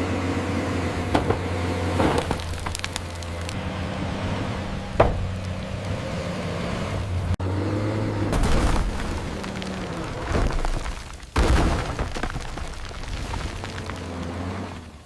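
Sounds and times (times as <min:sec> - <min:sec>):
bulldozer engine droning: 0:00.0 - 0:11.3, 0:12.8 - 0:15.0
timber crackling and crashing thuds: 0:01.0 - 0:03.6, 0:04.9 - 0:06.0, 0:08.2 - 0:14.9.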